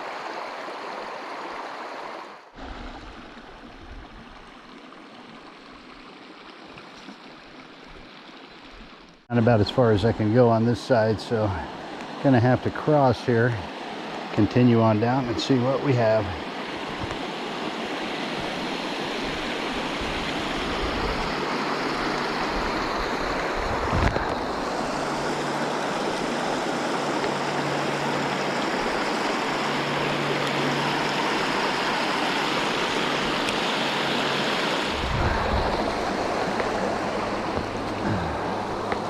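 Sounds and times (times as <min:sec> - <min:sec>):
creek water rushing: 0:00.0 - 0:39.0
low rumble: 0:34.9 - 0:39.0.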